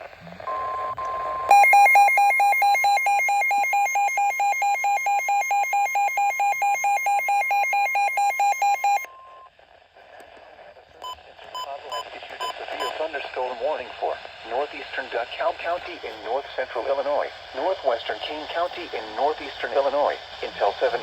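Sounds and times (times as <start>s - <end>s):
faint radio static: 0.0s - 2.4s, 7.7s - 21.0s
two-pitch electronic alarm: 1.4s - 9.1s.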